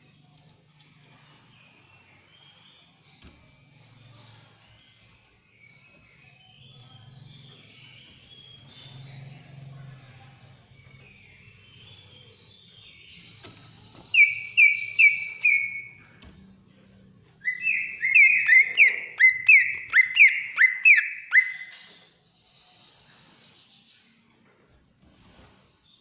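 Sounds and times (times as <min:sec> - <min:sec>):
bird singing whistled notes: 0:14.0 - 0:16.1, 0:17.4 - 0:22.0.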